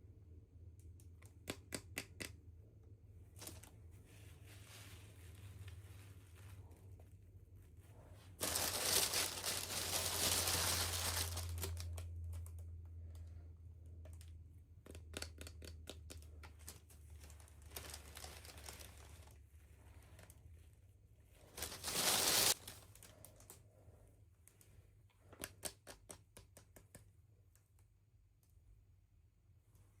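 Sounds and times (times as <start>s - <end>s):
toy packaging crinkling and tearing: 8.4s - 12.5s, 16.6s - 19.3s, 21.5s - 23.6s
small clicks and rustles: 8.4s - 20.5s, 21.4s - 28.6s.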